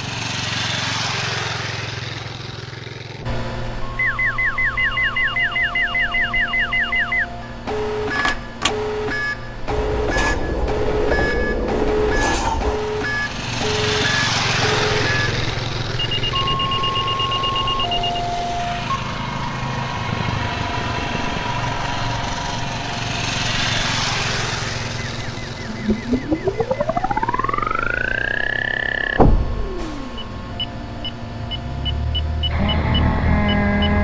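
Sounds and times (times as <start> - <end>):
rushing whoosh: 9.7 - 13.0
alternating low and high beeps: 25.1 - 30.4
held electronic tones: 25.4 - 30.4.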